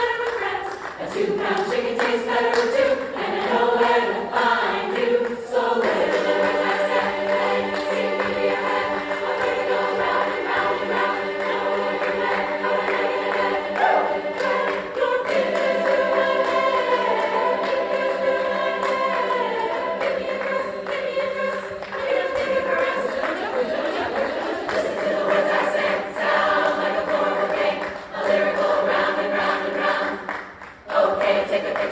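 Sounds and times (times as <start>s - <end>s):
women's chorus singing: 0.0s - 31.9s.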